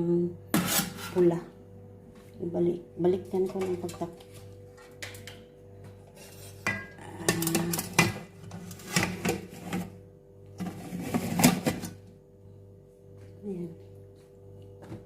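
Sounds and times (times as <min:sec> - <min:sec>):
metal utensils scraping a pan: 0:00.5 - 0:01.3, 0:06.1 - 0:09.8.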